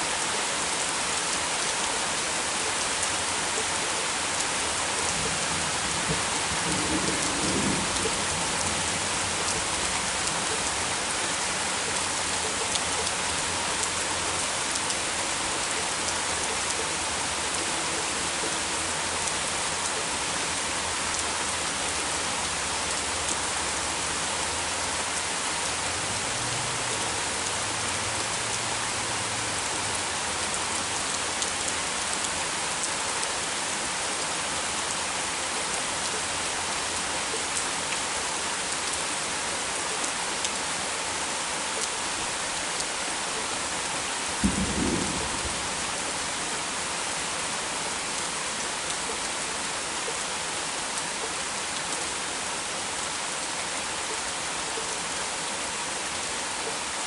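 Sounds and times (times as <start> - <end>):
heavy rain pouring: 0.0 - 57.0
thunder rumble: 44.4 - 45.9.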